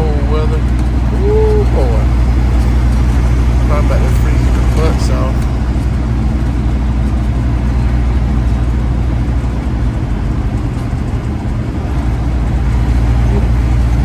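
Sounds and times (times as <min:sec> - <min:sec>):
diesel engine drone: 0:00.0 - 0:14.0
road noise: 0:00.0 - 0:14.0.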